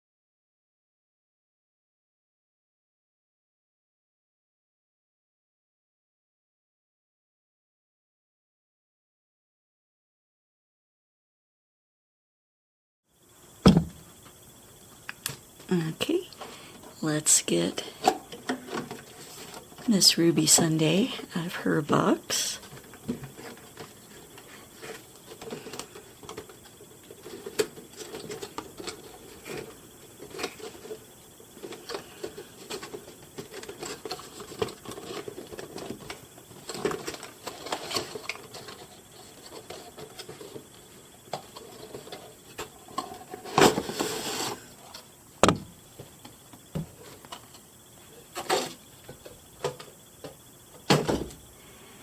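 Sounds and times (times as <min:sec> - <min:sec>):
cardboard and plastic packaging rustling: 0:22.6 - 0:49.9.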